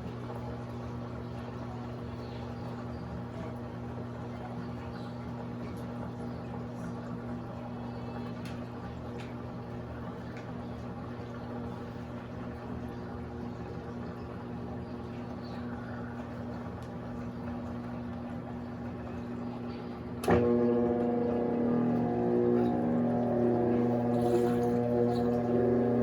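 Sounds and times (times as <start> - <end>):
washing machine motor humming: 16.2 - 26.0.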